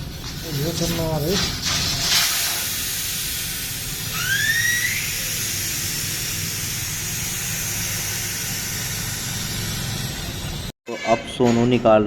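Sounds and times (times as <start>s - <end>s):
air hissing from tyre: 0.0s - 10.7s
brief rising squeal: 4.1s - 5.2s.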